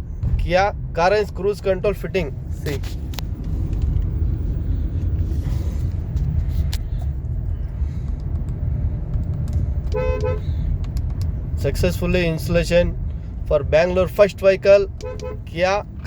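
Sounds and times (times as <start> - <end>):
car engine low rumble: 0.0 - 16.0.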